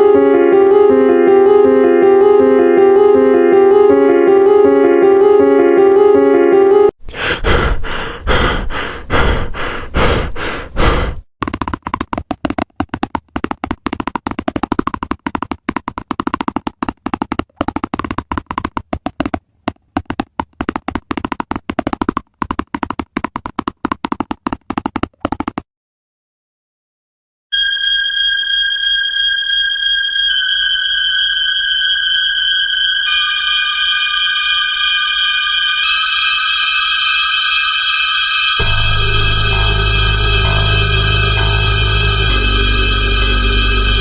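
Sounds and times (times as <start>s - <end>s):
heavy knocks: 38.6s - 42.6s.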